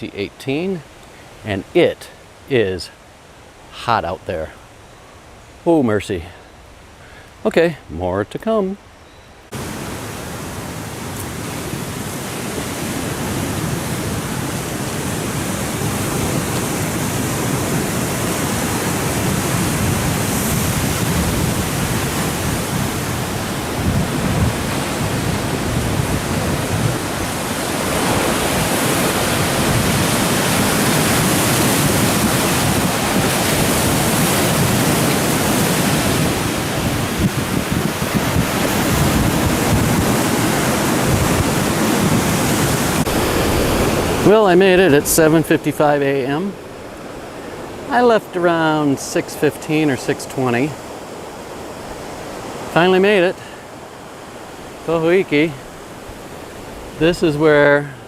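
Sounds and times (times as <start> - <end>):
ocean surf rushing: 0.0 - 58.0.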